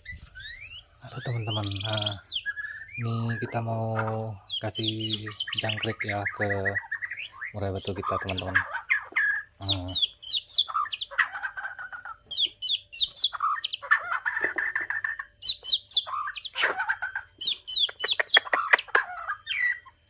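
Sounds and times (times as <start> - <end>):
bird whistling: 0.0 - 20.0
bird buzzy notes and clicks: 17.7 - 19.1.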